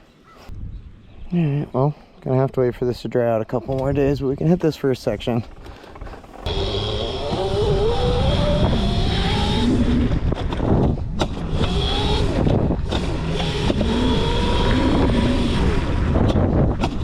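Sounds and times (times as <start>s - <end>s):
electric motor whining: 6.2s - 10.1s, 11.3s - 16.5s.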